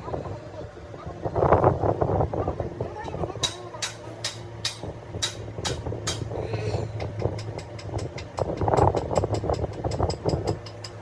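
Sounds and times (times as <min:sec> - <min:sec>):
diesel engine humming: 0:00.0 - 0:11.0
engine ticking: 0:02.9 - 0:11.0.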